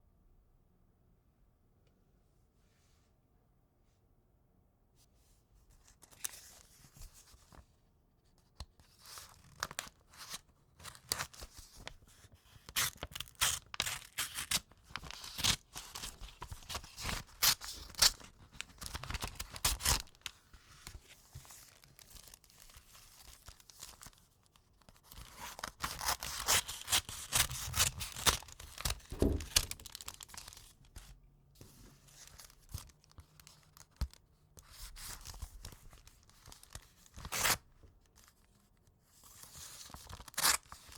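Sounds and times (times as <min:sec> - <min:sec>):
knife slitting paper envelope: 0:12.7 - 0:20.2, 0:25.1 - 0:30.6
paper rustling: 0:25.1 - 0:31.1.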